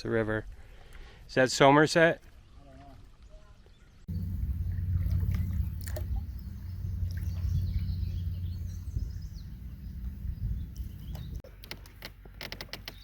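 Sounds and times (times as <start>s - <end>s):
birds chirping faintly: 3.2s - 11.5s
wind buffeting microphone: 4.1s - 11.4s.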